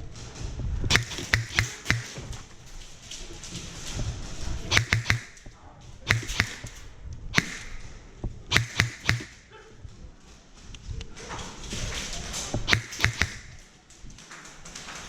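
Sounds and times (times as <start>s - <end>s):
airsoft gun bursts: 0.9s - 2.5s, 4.7s - 5.5s, 6.1s - 7.9s, 8.5s - 9.5s, 12.7s - 13.7s.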